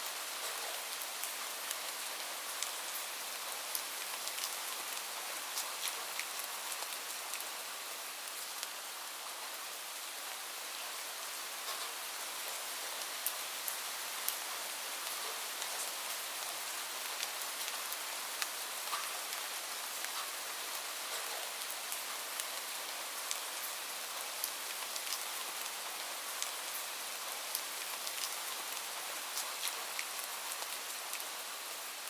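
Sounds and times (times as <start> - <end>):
light rain falling: 0.0 - 32.0
raindrop ticks: 3.7 - 7.4, 11.6 - 12.0, 18.4 - 19.2, 27.5 - 28.8.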